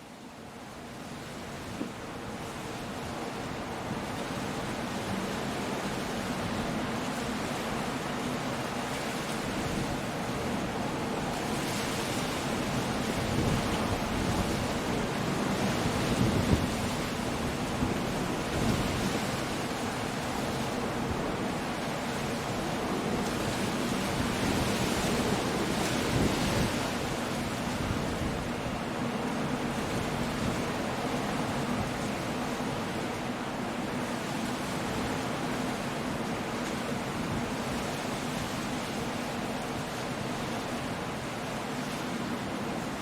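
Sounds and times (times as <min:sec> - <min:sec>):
rain: 0:00.0 - 0:43.0
wind: 0:00.0 - 0:43.0
heavy surf breaking: 0:09.4 - 0:34.0.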